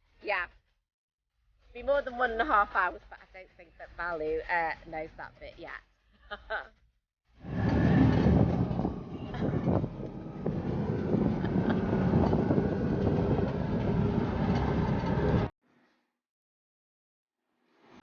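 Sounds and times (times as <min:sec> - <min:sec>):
auto-rickshaw engine running: 0:07.4 - 0:15.5
knocks and rattles: 0:07.4 - 0:15.5
road noise: 0:07.4 - 0:15.5.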